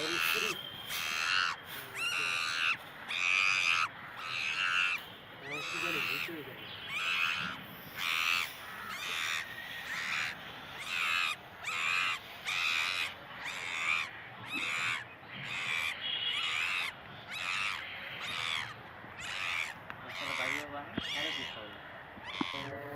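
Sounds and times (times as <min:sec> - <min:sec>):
short harsh animal calls: 0:00.0 - 0:22.7.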